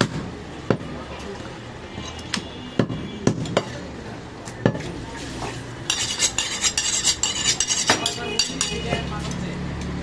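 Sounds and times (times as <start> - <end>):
blade scraping against metal: 5.9 - 8.9.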